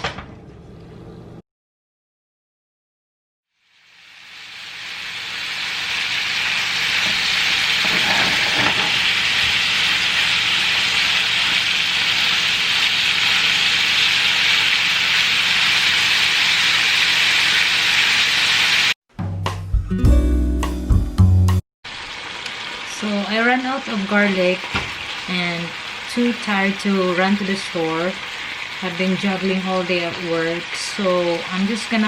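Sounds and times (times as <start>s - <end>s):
food sizzling in frying pan: 3.5s - 19.0s, 21.8s - 32.0s.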